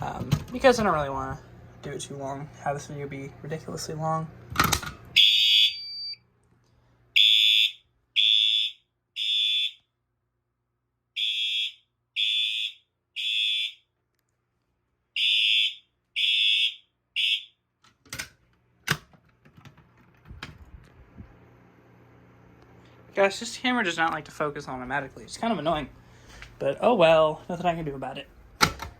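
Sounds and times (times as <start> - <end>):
fire alarm horn blasts: 5.2 - 6.2, 7.2 - 9.9, 11.1 - 13.9, 15.2 - 17.6.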